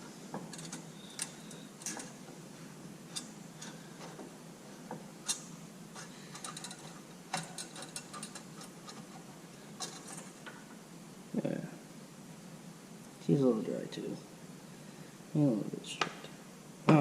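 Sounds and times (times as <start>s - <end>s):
hand tool turning screw: 6.0s - 10.3s.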